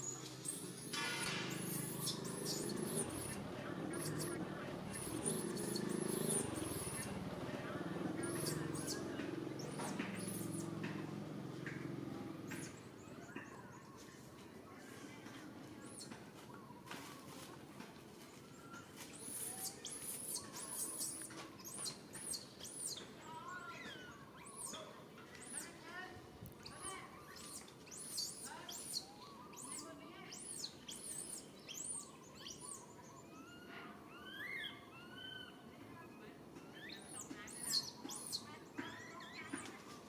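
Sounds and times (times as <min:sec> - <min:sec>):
high-pitched chirping calls: 0:00.0 - 0:10.8, 0:26.6 - 0:35.6, 0:36.6 - 0:40.0
lower squeaky rising calls: 0:00.0 - 0:13.9, 0:18.5 - 0:25.8, 0:26.6 - 0:35.8, 0:36.6 - 0:40.0.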